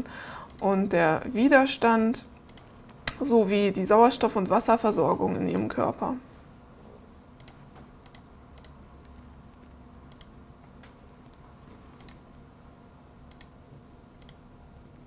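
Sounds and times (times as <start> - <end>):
low steady hum: 0.0 - 15.0
computer keys clicking: 2.4 - 3.2, 7.4 - 12.2, 13.3 - 13.5, 14.2 - 15.0.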